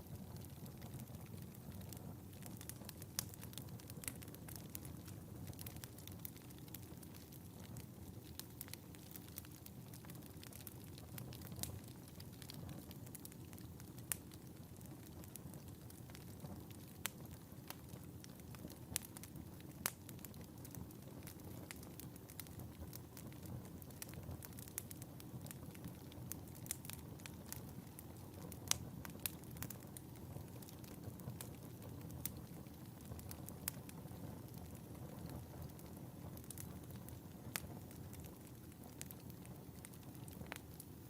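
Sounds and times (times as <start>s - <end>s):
low rumble of flames: 0.0s - 41.0s
wood fire crackling and popping: 0.0s - 41.0s.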